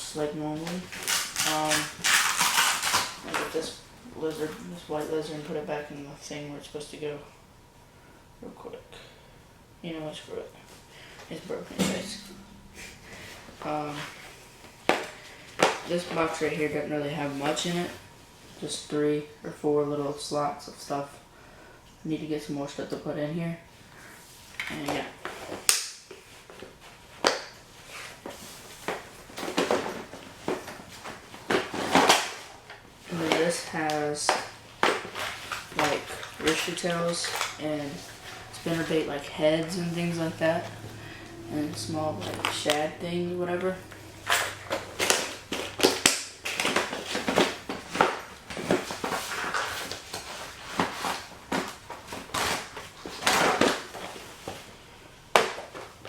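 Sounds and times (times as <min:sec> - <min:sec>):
rustling and knocking of boxes: 0:28.2 - 0:32.5, 0:44.8 - 0:54.7.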